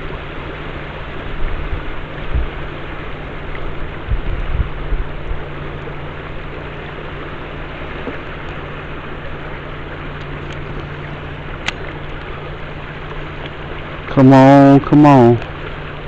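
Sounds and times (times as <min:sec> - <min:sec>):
river water rushing: 0:00.0 - 0:16.0
low thumps: 0:04.0 - 0:05.4.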